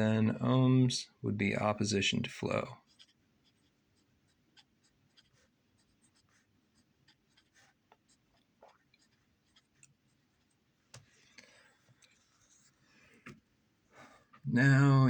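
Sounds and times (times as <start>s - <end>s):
pen scratching on paper: 2.8s - 12.8s.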